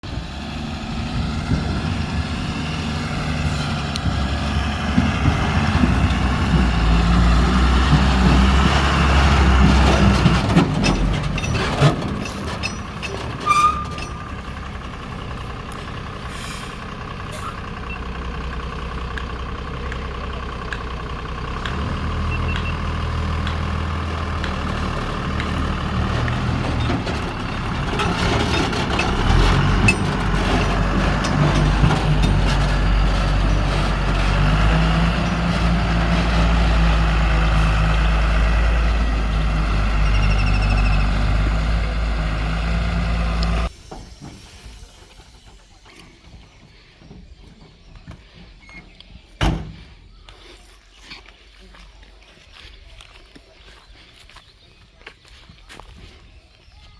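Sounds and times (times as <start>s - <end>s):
backhoe diesel engine working: 0.0s - 56.9s.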